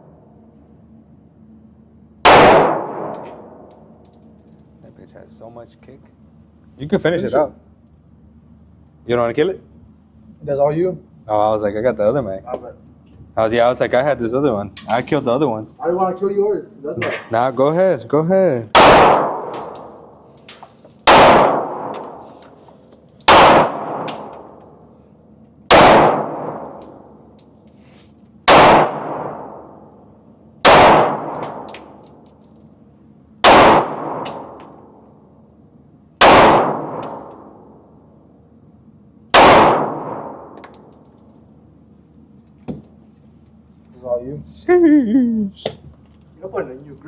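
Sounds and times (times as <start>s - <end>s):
handgun shots echoing: 2.3s - 3.6s, 18.7s - 20.0s, 21.0s - 22.2s, 23.2s - 24.6s, 25.7s - 27.0s, 28.5s - 29.6s, 30.7s - 32.0s, 33.4s - 34.7s, 36.2s - 37.5s, 39.4s - 41.0s.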